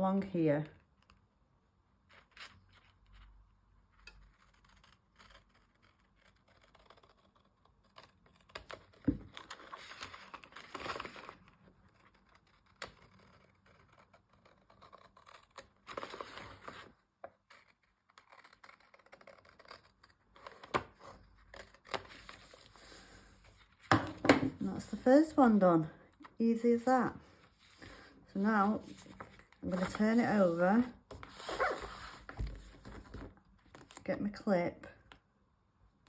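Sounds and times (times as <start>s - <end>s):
scissors cutting paper: 4.1s - 11.3s, 11.9s - 16.9s, 17.5s - 20.8s
paper rustling: 21.5s - 25.6s, 27.2s - 34.0s.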